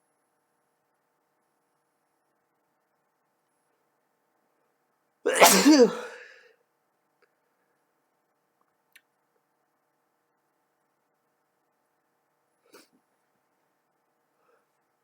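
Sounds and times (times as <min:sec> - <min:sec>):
person sneezing loudly: 0:05.3 - 0:06.4.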